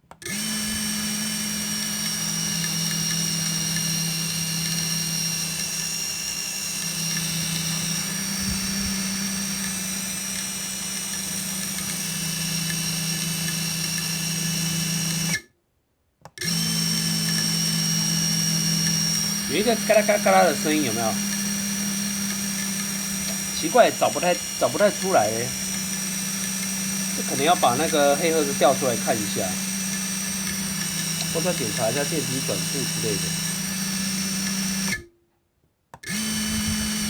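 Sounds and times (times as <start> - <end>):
drone propellers whining: 18.4 - 35.0.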